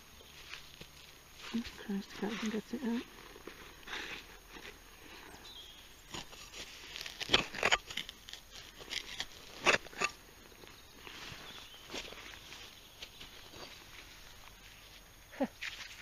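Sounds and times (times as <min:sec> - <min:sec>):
scrapes and knocks digging soil: 0:06.0 - 0:15.0.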